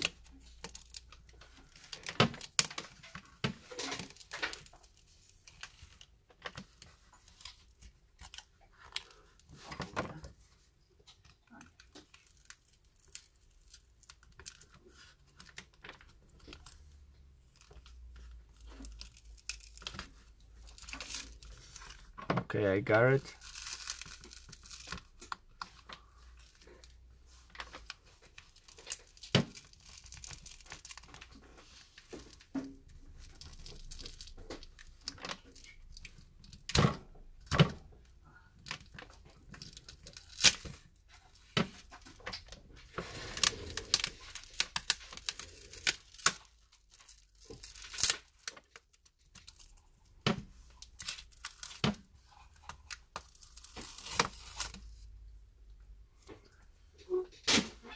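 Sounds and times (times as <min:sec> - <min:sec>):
glass cracking and clicking: 0:11.5 - 0:14.7, 0:18.6 - 0:22.0, 0:38.7 - 0:40.8, 0:43.3 - 0:49.8
adhesive tearing: 0:38.8 - 0:49.8, 0:50.5 - 0:54.9.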